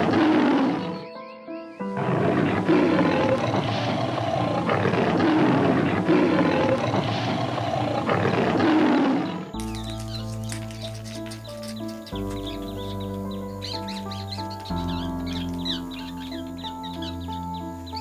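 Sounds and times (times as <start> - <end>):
music track: 9.0 - 18.0.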